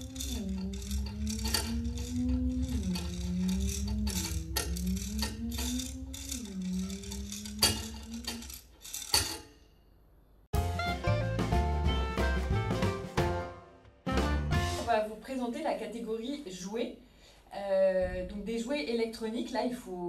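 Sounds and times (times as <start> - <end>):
low hum changing pitch: 0.0 - 8.3
rattling clicking object: 0.0 - 9.7.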